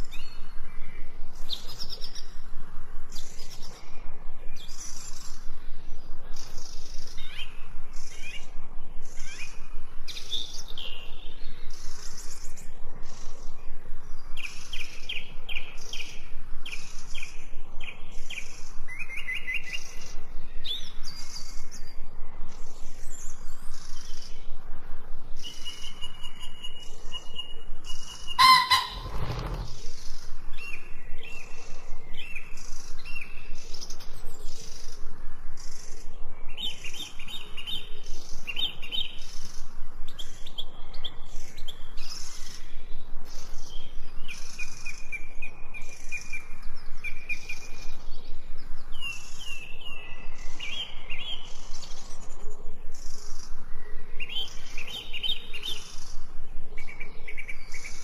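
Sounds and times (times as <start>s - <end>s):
small birds chirping and trilling: 0.0s - 58.0s
brief harsh sound: 28.4s - 29.7s.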